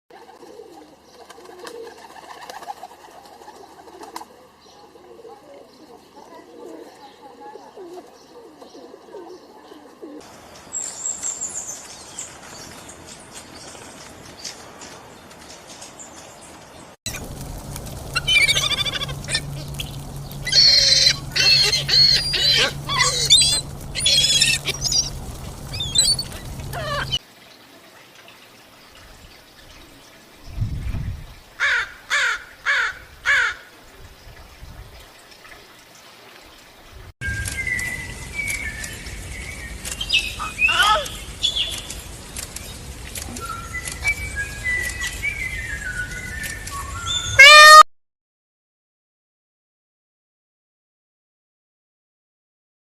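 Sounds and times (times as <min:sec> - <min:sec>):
pigeon cooing: 0:00.2 - 0:10.2, 0:18.1 - 0:27.2
background hiss: 0:10.0 - 0:46.8
small bird trilling and chirping: 0:19.7 - 0:27.2.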